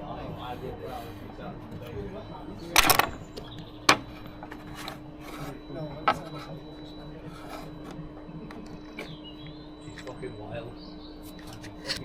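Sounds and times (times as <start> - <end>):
steady low hum: 0.0 - 12.0
metal tools scraping and rubbing: 2.8 - 8.0, 11.2 - 12.0.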